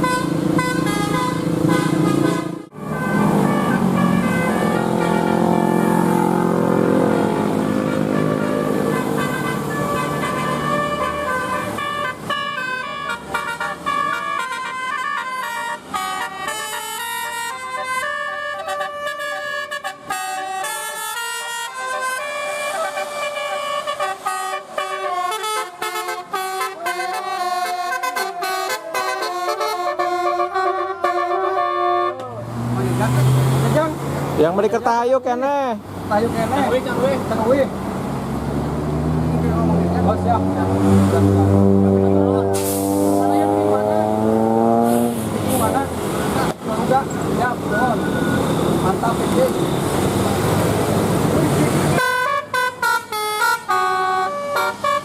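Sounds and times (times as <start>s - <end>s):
multi-tone bus horn melody: 0.0s - 32.4s, 39.7s - 45.9s, 51.7s - 55.0s
bus engine running: 0.0s - 35.0s, 35.7s - 55.0s.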